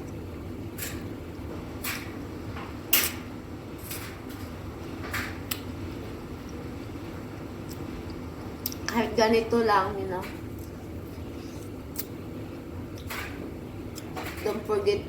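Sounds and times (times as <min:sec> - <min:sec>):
steady low hum: 0:00.0 - 0:15.0
fruit clicking and crackling: 0:11.4 - 0:12.2.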